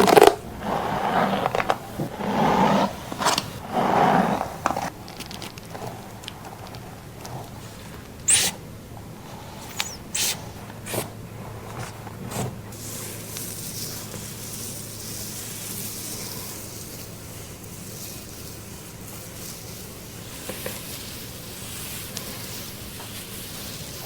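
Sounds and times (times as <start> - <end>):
scratchy rustles and clicks: 0.0 - 8.6, 9.3 - 17.2
water spraying hiss: 9.3 - 11.0.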